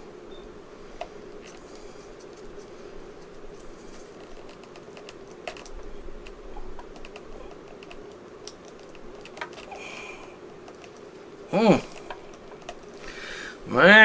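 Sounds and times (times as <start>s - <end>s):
faint steady hum: 0.0s - 14.0s
plastic parts clicking: 3.6s - 11.2s, 11.9s - 13.1s.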